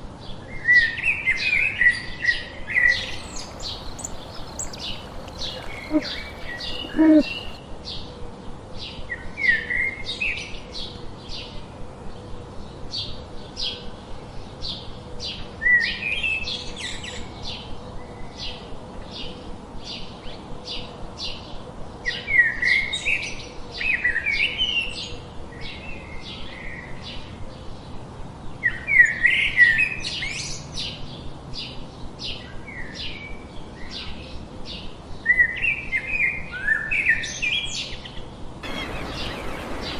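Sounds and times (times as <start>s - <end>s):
bird chirping: 2.8s - 7.6s, 38.6s - 39.9s
bird warbling: 3.0s - 7.6s, 38.6s - 39.9s.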